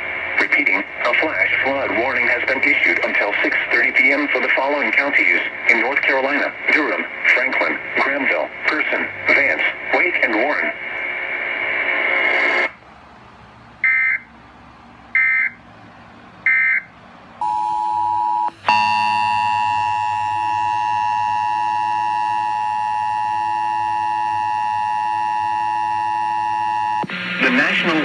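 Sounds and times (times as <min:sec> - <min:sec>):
multi-tone electronic alarm: 0:16.5 - 0:28.0.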